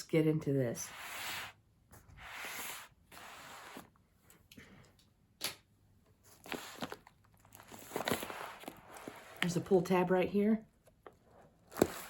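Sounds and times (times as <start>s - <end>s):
package wrapping rustling: 6.3s - 9.5s.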